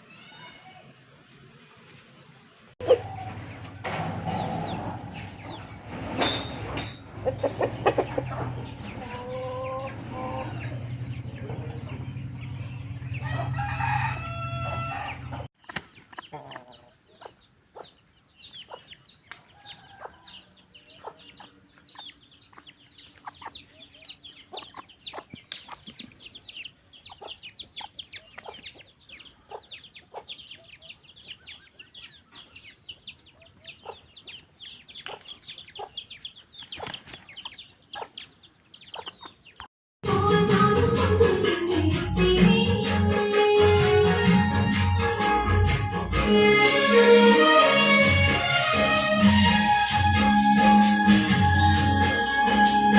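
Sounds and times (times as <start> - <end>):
rooster crowing: 13.1 - 15.5, 19.6 - 20.6.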